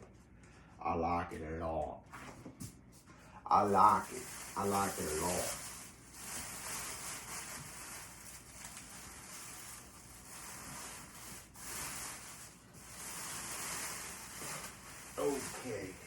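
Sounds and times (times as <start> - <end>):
packaging rustling and rubbing: 3.6 - 16.0.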